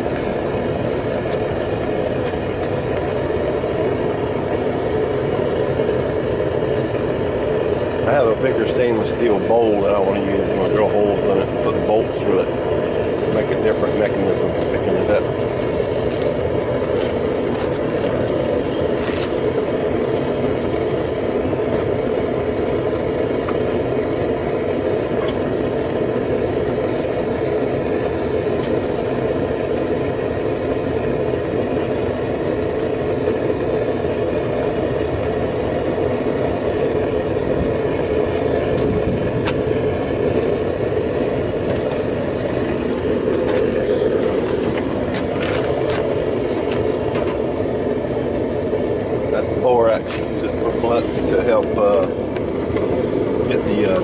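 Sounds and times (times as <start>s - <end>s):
propane burner rushing: 0.0s - 54.0s.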